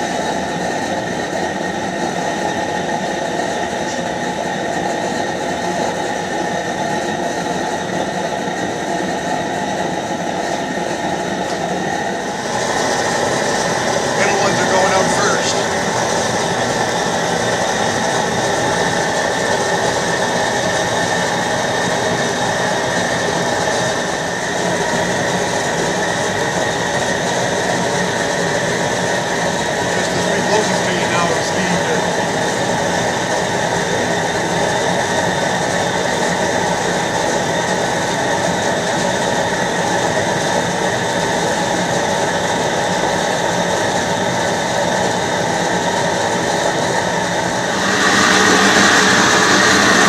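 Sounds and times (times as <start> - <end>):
gas torches roaring: 47.6 - 50.0.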